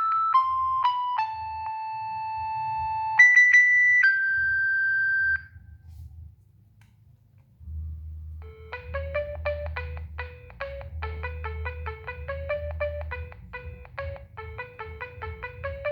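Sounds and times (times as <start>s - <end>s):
faint hum: 4.1s - 15.9s.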